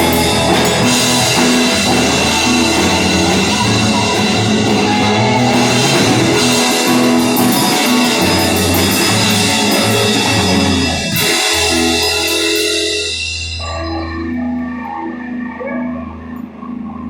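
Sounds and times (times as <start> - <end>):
drum kit: 0.0 - 15.6
bass guitar: 0.0 - 17.0
electric guitar: 0.0 - 17.0.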